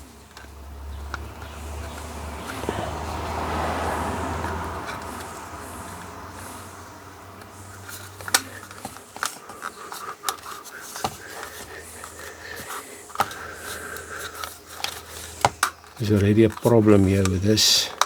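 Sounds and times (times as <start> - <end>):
plastic parts clicking and knocking: 0.0 - 3.7, 7.4 - 18.0
faint steady background noise: 0.0 - 18.0.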